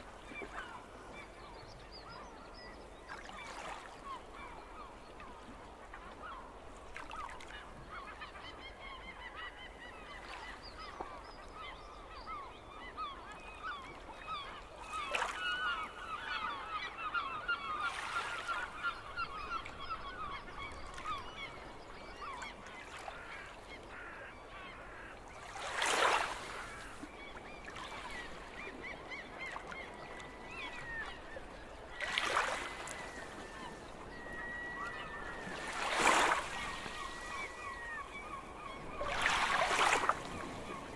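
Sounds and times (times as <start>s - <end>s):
seagulls calling: 11.6s - 40.9s
sea waves splashing: 25.4s - 27.0s, 32.0s - 40.9s.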